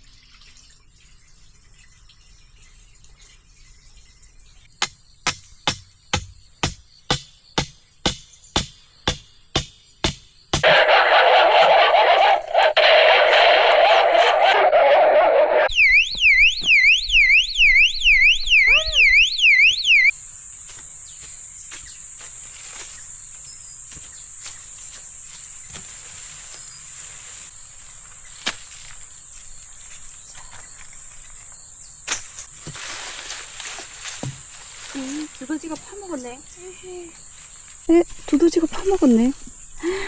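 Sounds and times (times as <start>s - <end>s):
electronic warbling alarm tone: 15.6s - 20.1s
high insect trill: 15.7s - 40.0s.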